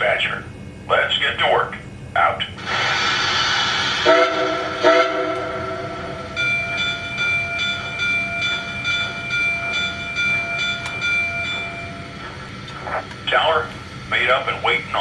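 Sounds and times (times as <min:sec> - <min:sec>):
steam whistle toots: 0:02.7 - 0:06.4
locomotive bell ringing: 0:04.1 - 0:13.6.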